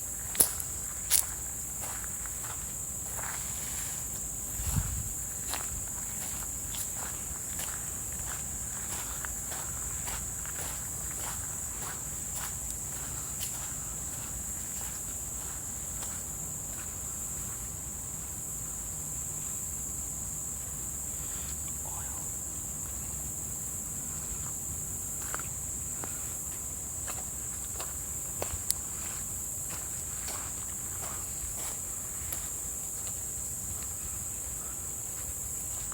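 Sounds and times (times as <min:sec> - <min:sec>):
insect chorus: 0:00.0 - 0:35.9.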